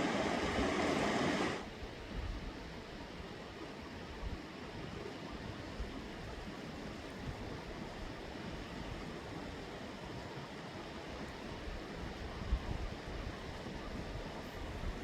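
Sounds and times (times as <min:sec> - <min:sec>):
fast river rushing: 0:00.0 - 0:01.6.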